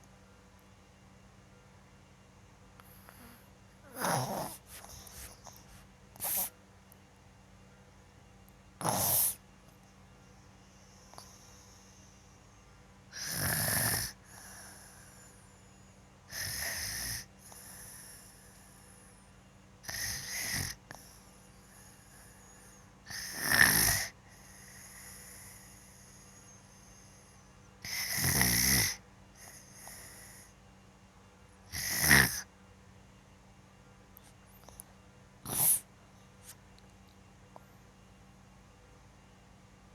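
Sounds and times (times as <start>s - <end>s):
soft breath out: 2.8s - 6.5s
boy snoring: 3.1s - 5.3s, 8.8s - 9.4s, 13.1s - 15.2s, 16.3s - 18.4s, 19.9s - 21.0s, 23.1s - 26.0s, 27.8s - 30.2s, 31.7s - 32.4s, 35.4s - 35.8s.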